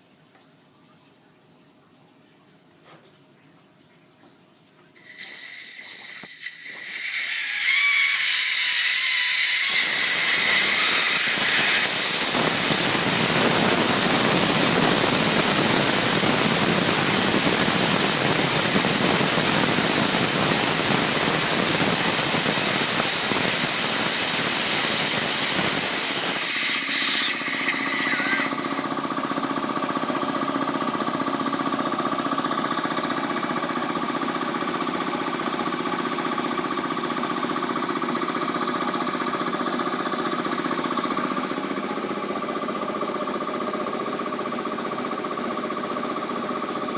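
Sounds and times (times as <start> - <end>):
compressed air hissing: 5.0 - 28.9
compressor motor humming: 5.0 - 29.4.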